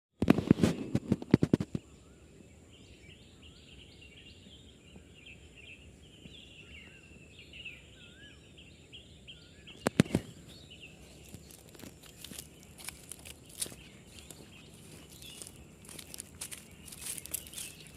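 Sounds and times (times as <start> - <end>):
small animals chirping: 11.0 - 17.9.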